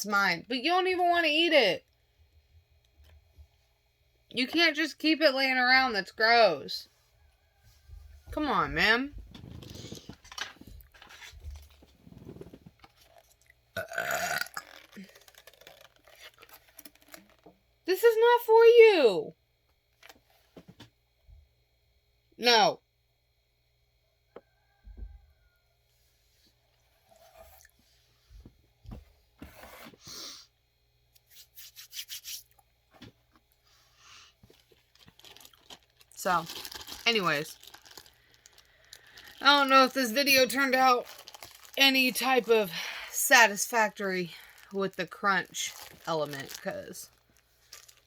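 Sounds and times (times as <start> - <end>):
burp: 13.8 - 15.0
rubbing and scraping handling: 29.4 - 30.1.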